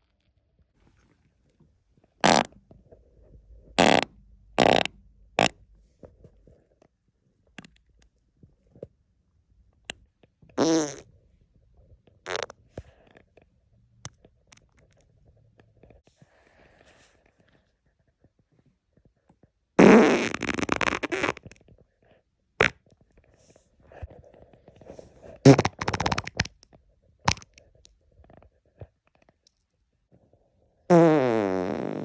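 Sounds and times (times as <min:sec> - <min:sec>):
man farting: 0:02.2 - 0:02.5, 0:03.8 - 0:05.6, 0:10.6 - 0:11.0, 0:12.3 - 0:12.5, 0:19.8 - 0:21.4, 0:25.4 - 0:26.5, 0:30.9 - 0:32.0.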